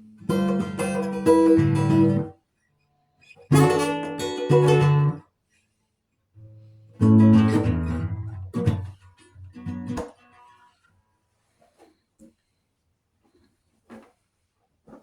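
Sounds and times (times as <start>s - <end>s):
acoustic guitar strumming: 0.1s - 2.3s, 3.5s - 5.2s, 7.0s - 10.5s.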